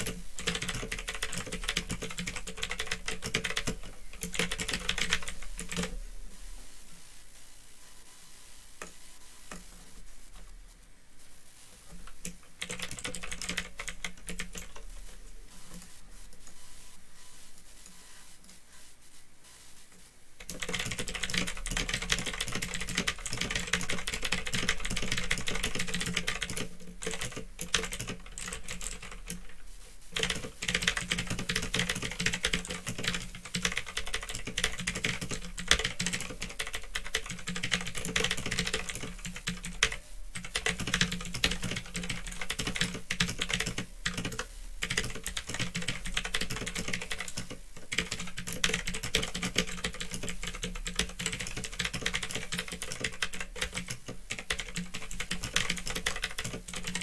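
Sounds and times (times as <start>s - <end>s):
clicky mechanical keyboard typing: 0.0s - 6.0s, 12.0s - 14.9s, 20.4s - 29.6s, 30.2s - 57.0s
steady low hum: 0.0s - 57.0s.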